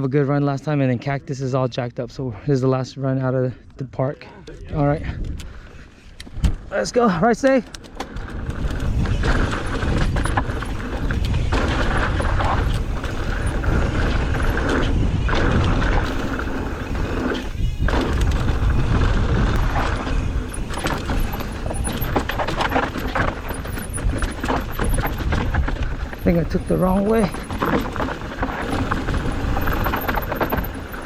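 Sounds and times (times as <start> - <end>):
wind rush on microphone: 4.6 - 6.8, 7.8 - 31.0
bike rattling over bumps: 4.8 - 31.0
bike tyres skidding on dirt: 8.1 - 31.0.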